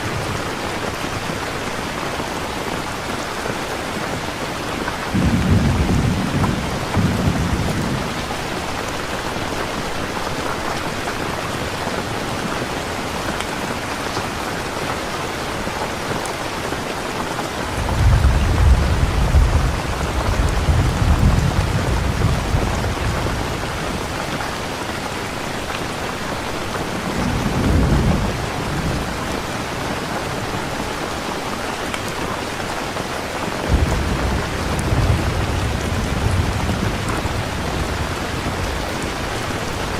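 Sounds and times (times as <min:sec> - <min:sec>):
steady rain falling: 0:00.0 - 0:39.9
low thunder rumbling: 0:05.1 - 0:08.6, 0:17.7 - 0:24.2, 0:33.7 - 0:39.9.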